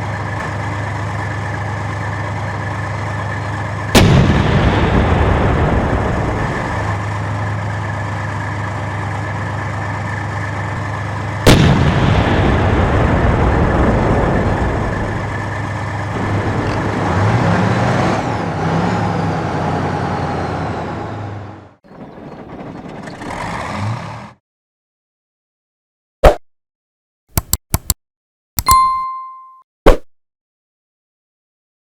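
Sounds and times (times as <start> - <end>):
tank engine droning: 0.0 - 24.4
cannon shot: 4.0 - 6.9, 11.5 - 15.3.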